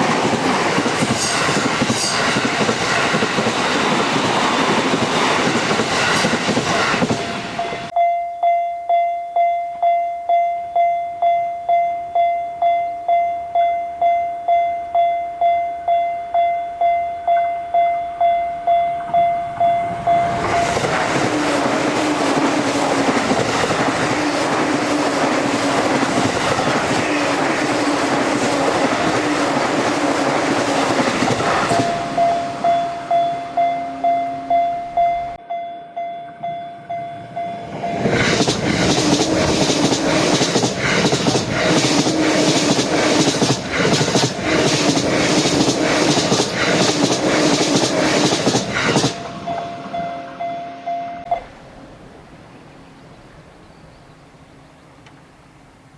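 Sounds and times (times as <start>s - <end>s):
train passing: 0.0s - 55.9s
level crossing warning bell: 7.5s - 20.9s, 31.6s - 38.2s, 49.1s - 51.6s.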